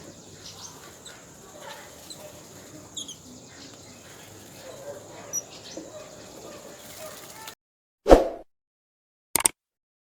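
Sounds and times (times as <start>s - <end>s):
birds chirping and chattering: 0.0s - 7.6s.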